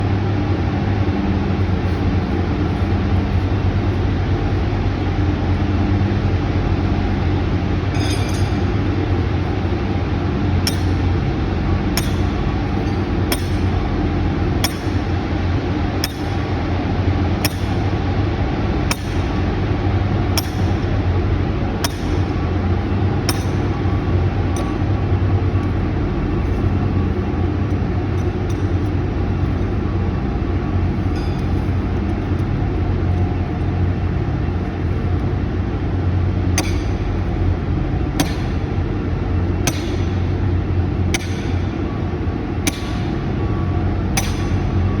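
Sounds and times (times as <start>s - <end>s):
metal clinking: 7.9s - 8.7s
sledgehammer striking steel pins: 10.6s - 11.1s, 12.0s - 13.7s, 38.2s - 38.6s, 39.7s - 40.2s, 41.1s - 41.7s, 42.7s - 43.1s, 44.2s - 44.6s.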